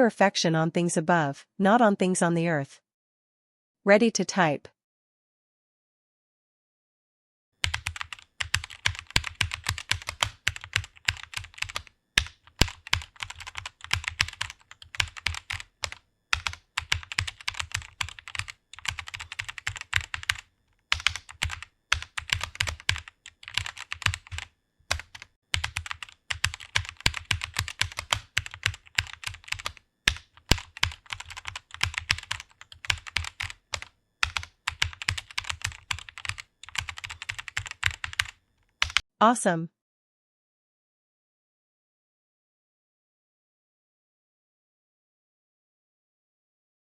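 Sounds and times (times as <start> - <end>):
typing on keyboard: 7.6 - 39.0.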